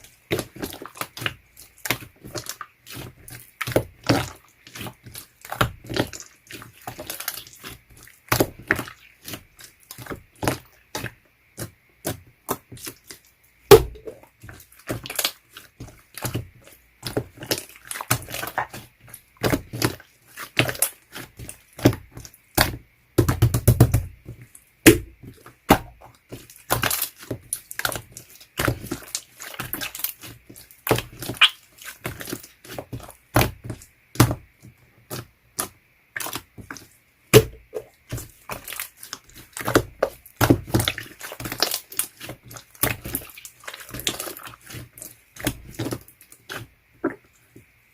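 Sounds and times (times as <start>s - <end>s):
slime squeezed by hand: 31.0s - 32.4s.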